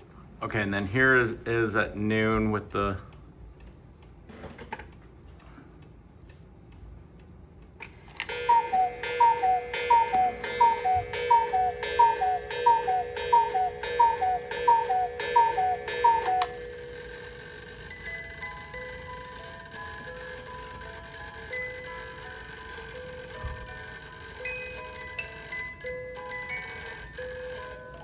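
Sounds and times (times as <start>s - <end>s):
clock movement grinding hum: 0.0s - 28.0s
clock clicking: 4.8s - 28.0s
cuckoo clock calls: 7.8s - 28.0s.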